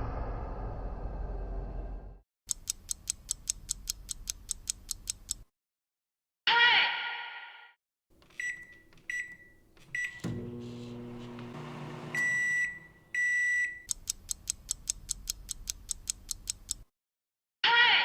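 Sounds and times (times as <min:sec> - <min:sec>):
rapid beeping: 0:08.2 - 0:13.8
long microwave beeps: 0:08.2 - 0:13.9
microwave keypad beeps: 0:08.2 - 0:13.9
microwave oven humming: 0:08.2 - 0:13.9.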